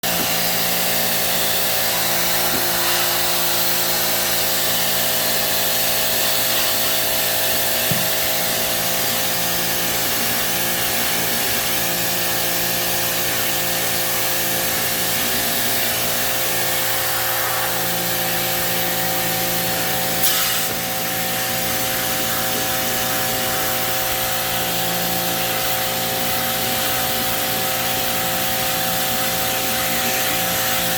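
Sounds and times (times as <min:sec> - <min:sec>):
pressure washer pump running: 0:00.0 - 0:30.9
water spray hissing: 0:00.2 - 0:06.8, 0:16.2 - 0:18.7.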